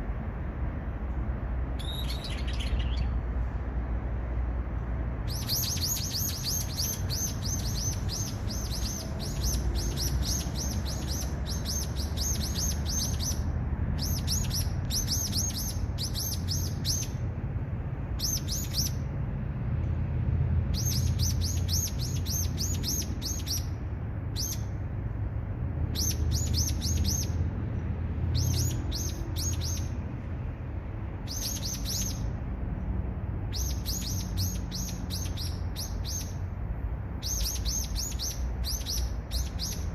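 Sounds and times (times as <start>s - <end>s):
steady low rumble: 0.0s - 39.9s
songbird calling: 1.8s - 3.2s, 5.3s - 17.3s, 18.2s - 19.0s, 20.7s - 24.8s, 25.9s - 27.5s, 28.3s - 30.0s, 31.2s - 32.4s, 33.5s - 36.5s, 37.2s - 39.9s.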